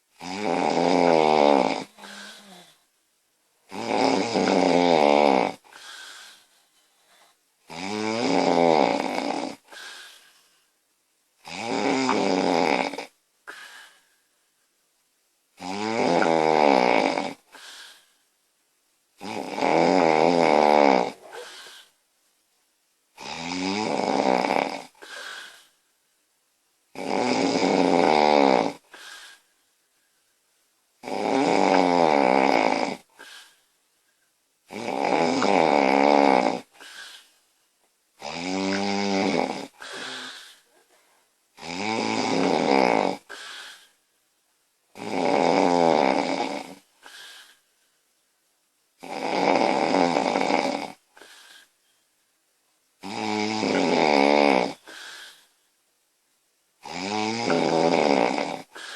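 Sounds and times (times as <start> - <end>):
woman snoring loudly: 0.2 - 2.8, 3.7 - 5.6, 7.7 - 9.6, 11.4 - 13.1, 15.6 - 17.6, 19.2 - 21.9, 23.2 - 25.5, 26.9 - 29.4, 31.0 - 33.4, 34.7 - 37.0, 38.2 - 40.7, 41.6 - 43.5, 45.0 - 46.8, 49.0 - 51.0, 53.0 - 55.2, 56.8 - 58.9
quiet breath: 1.8 - 3.0, 5.6 - 7.6, 9.6 - 10.8, 13.4 - 14.6, 17.4 - 18.3, 21.2 - 22.0, 24.9 - 26.0, 28.8 - 30.4, 33.1 - 34.3, 36.6 - 37.6, 39.6 - 41.4, 43.2 - 44.1, 46.8 - 48.0, 51.1 - 52.1, 54.8 - 55.7, 58.6 - 58.9.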